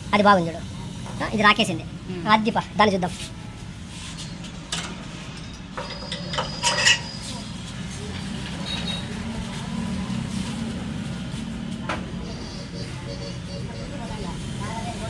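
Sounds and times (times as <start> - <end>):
metal parts clinking: 4.5 - 7.3.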